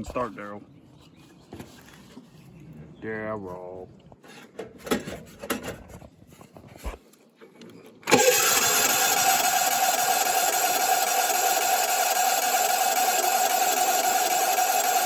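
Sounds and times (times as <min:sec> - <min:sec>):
tractor engine running: 0:08.0 - 0:15.0.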